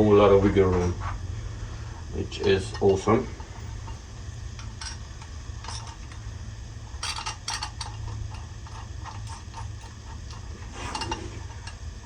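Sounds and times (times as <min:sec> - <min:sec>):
steady low hum: 0:00.0 - 0:12.0
metal parts clicking and scraping: 0:02.0 - 0:04.0, 0:04.6 - 0:06.3, 0:06.9 - 0:11.8.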